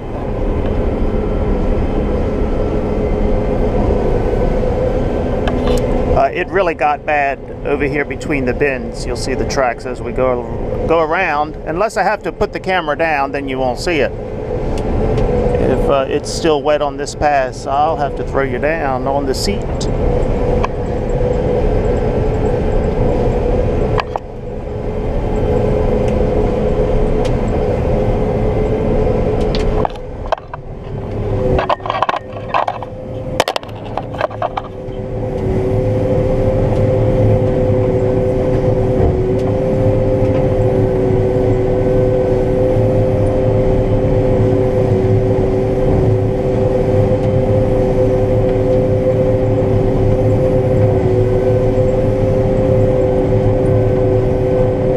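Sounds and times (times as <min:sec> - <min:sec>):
combine harvester drone: 0:00.0 - 0:54.9.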